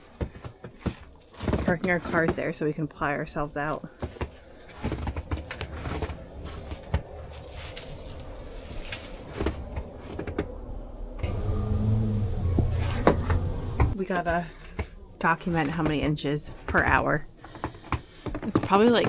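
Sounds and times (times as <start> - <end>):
low hum: 4.3 - 15.6
car engine running: 11.2 - 14.0.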